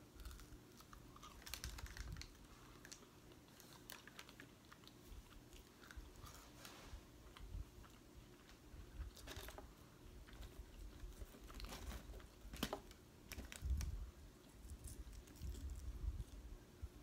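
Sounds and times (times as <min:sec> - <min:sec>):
paper wrapper crinkling: 0:01.2 - 0:05.0, 0:10.3 - 0:14.0.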